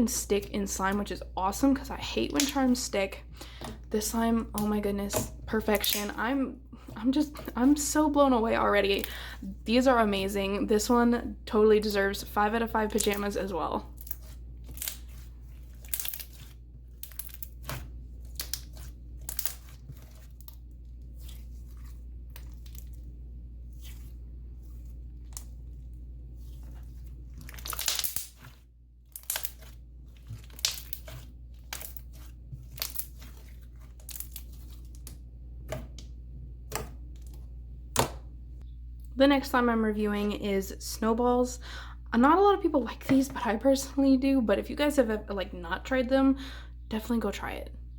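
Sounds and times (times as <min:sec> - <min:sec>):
slime crackling and popping: 0:13.9 - 0:23.0, 0:26.4 - 0:34.9.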